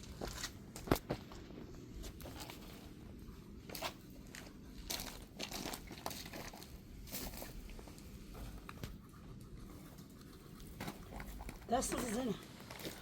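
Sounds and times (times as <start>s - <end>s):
crinkling and rustling: 0.0s - 13.0s.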